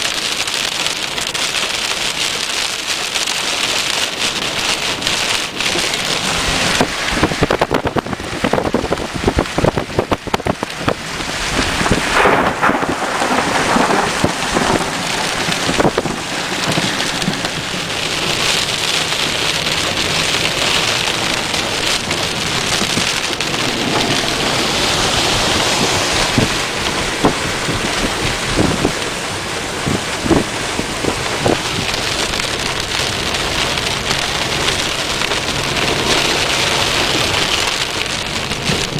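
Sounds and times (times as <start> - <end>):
heavy rain pouring: 0.0 - 38.9
raindrops striking a surface: 0.0 - 38.9.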